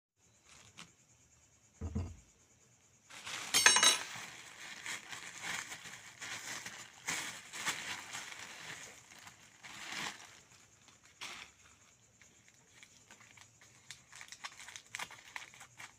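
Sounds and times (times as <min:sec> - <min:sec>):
dull thump: 0:01.8 - 0:02.2
glass crackling and clinking: 0:03.5 - 0:04.3.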